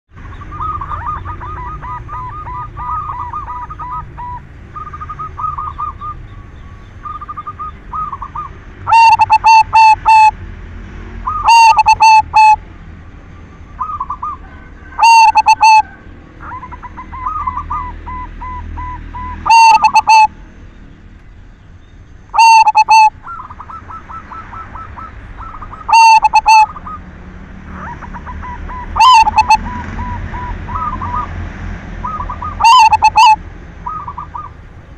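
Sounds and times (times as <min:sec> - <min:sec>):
dove cooing loudly: 0:00.3 - 0:06.2, 0:07.0 - 0:10.4, 0:11.2 - 0:12.6, 0:13.8 - 0:20.4, 0:22.3 - 0:27.0, 0:27.7 - 0:31.4, 0:32.0 - 0:34.6
faint dove cooing: 0:08.9 - 0:10.3, 0:11.3 - 0:12.6, 0:13.8 - 0:20.3, 0:22.4 - 0:27.0, 0:27.8 - 0:31.3, 0:32.0 - 0:34.5.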